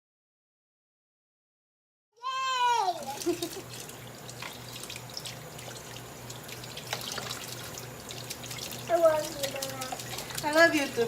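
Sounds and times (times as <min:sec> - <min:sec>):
tap running into sink: 0:06.5 - 0:10.8.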